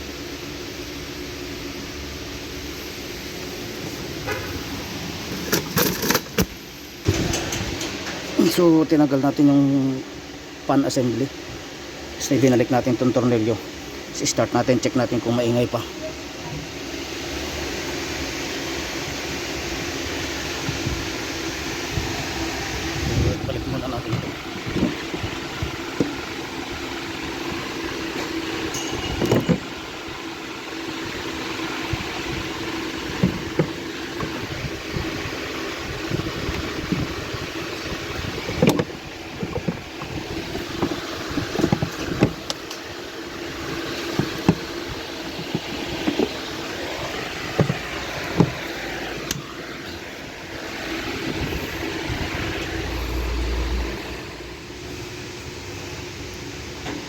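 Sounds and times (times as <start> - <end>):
low mechanical hum: 0.0 - 57.0
hand tools clinking on metal: 28.7 - 29.7.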